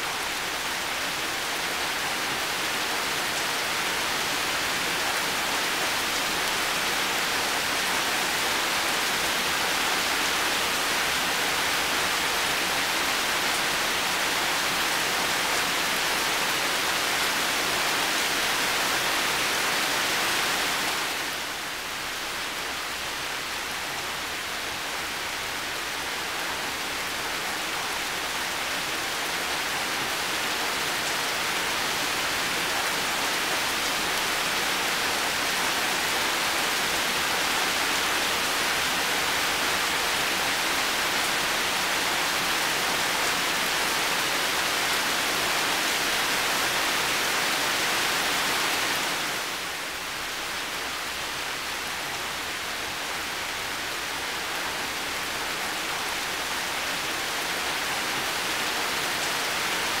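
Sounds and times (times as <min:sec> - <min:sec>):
heavy rain falling: 0:00.0 - 1:00.0.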